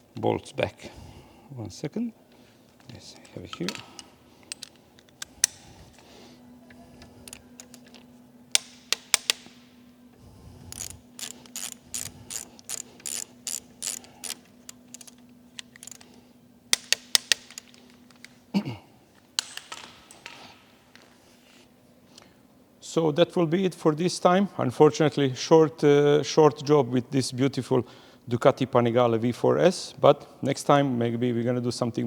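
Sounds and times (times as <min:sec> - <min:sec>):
torque wrench ratchet clicks: 0:10.7 - 0:16.1
sharp single wrench clicks: 0:10.8 - 0:16.0.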